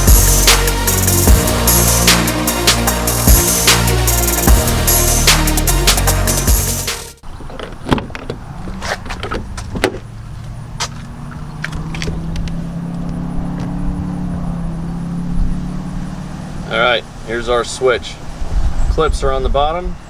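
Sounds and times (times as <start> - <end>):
steady low hum: 0.0 - 7.1.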